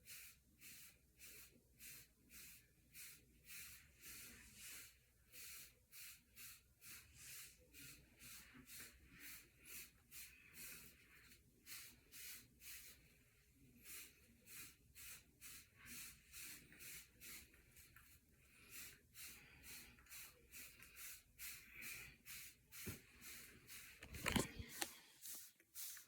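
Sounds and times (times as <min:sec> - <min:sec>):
brush strokes through short hair: 0:00.1 - 0:26.0.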